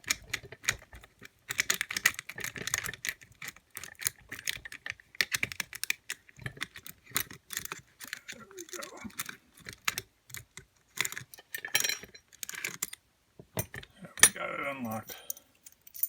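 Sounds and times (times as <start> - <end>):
lock picking metallic clicks: 1.5 - 13.0, 15.0 - 16.0.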